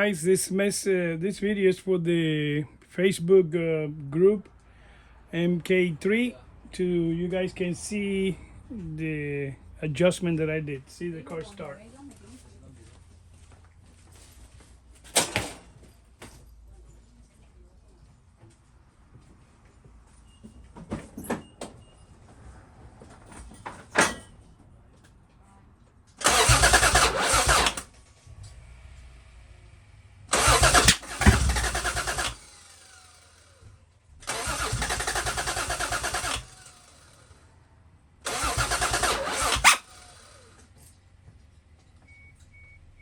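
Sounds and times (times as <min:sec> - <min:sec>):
engine starter cranking: 0:26.2 - 0:28.0, 0:30.3 - 0:33.6, 0:34.2 - 0:37.4, 0:38.2 - 0:40.7.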